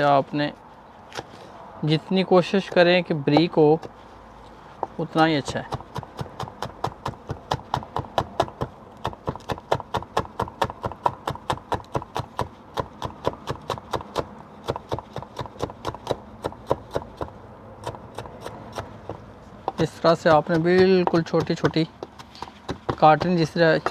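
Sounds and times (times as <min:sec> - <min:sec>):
knife chopping on cutting board: 0:04.8 - 0:23.9.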